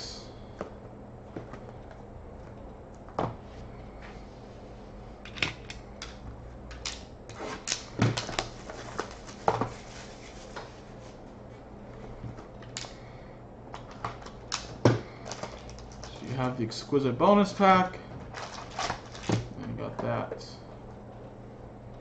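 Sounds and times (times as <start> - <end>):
wrapping rustling: 15.2 - 16.5, 18.2 - 19.5.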